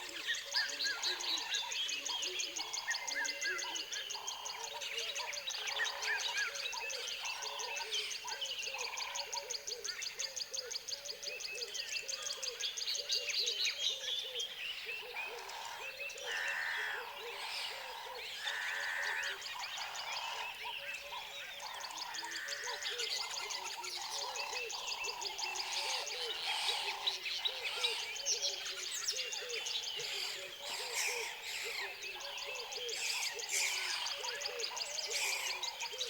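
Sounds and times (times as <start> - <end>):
frogs calling: 15.4 - 28.8, 30.0 - 36.0
birds calling: 15.4 - 36.0.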